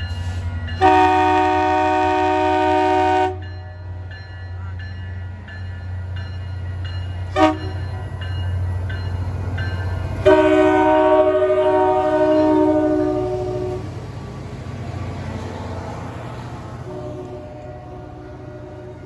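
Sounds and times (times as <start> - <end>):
locomotive bell ringing: 0.0 - 13.9
diesel locomotive engine rumbling: 0.0 - 19.0
locomotive horn blast: 0.8 - 3.4, 7.3 - 7.9, 10.2 - 13.9, 16.8 - 19.0.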